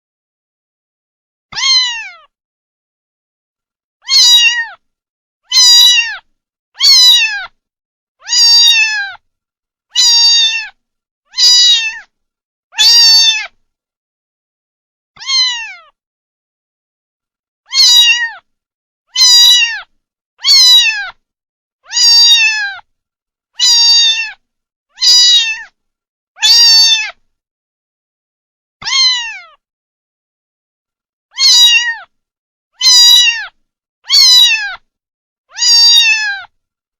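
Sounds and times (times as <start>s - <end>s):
kitten meowing: 1.5s - 2.3s, 4.0s - 4.8s, 5.5s - 7.6s, 8.2s - 9.2s, 10.0s - 12.1s, 12.7s - 13.6s, 15.2s - 16.0s, 17.7s - 18.5s, 19.1s - 21.2s, 21.8s - 22.9s, 23.6s - 24.4s, 25.0s - 25.8s, 26.4s - 27.2s, 28.8s - 29.6s, 31.3s - 32.1s, 32.8s - 34.8s, 35.5s - 36.6s.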